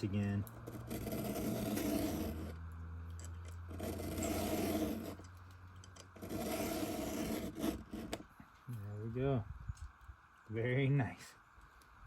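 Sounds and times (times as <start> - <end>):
hand file scraping metal: 0.6 - 2.6, 3.7 - 5.3, 6.1 - 8.3.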